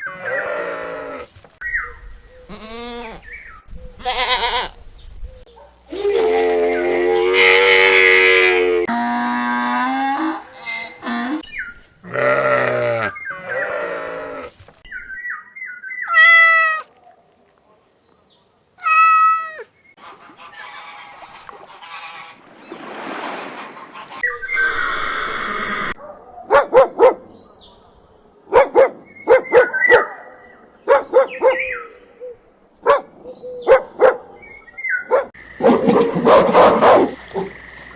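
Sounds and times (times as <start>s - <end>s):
dog barking: 5.4s - 5.9s, 26.0s - 37.5s
animal calls: 24.0s - 27.2s, 28.5s - 37.6s.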